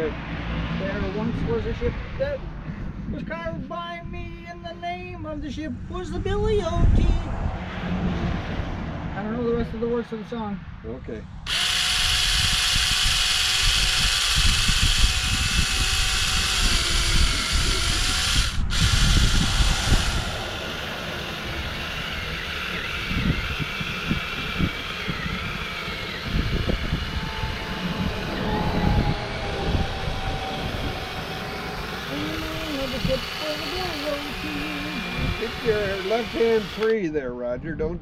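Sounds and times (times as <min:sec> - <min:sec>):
electric chainsaw cutting pumpkin: 0:11.5 - 0:37.0.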